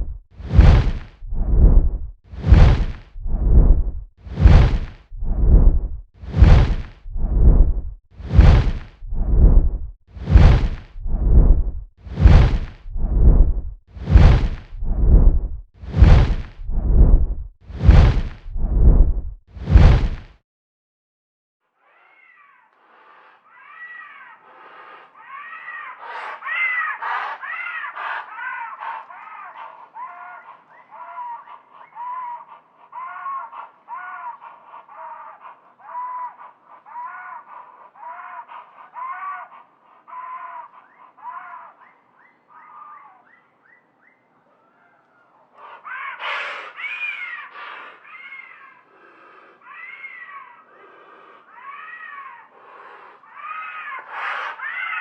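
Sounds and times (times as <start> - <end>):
creature cries: 21.8 - 22.8, 23.4 - 24.5, 25.2 - 43.2, 44.6 - 48.9, 49.5 - 55.0.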